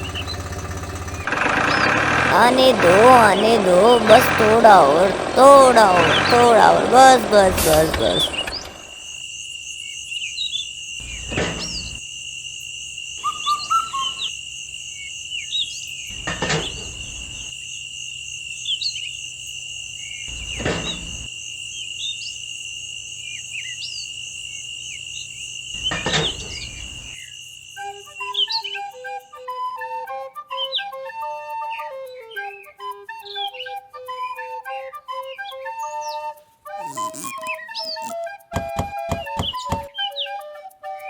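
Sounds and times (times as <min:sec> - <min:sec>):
bird chirps: 0:08.0 - 0:09.2, 0:09.8 - 0:12.0, 0:13.2 - 0:14.3, 0:15.3 - 0:17.5, 0:20.0 - 0:21.3, 0:24.9 - 0:27.2, 0:28.0 - 0:28.9, 0:36.8 - 0:40.4
crickets chirring: 0:08.0 - 0:29.0, 0:36.8 - 0:40.2.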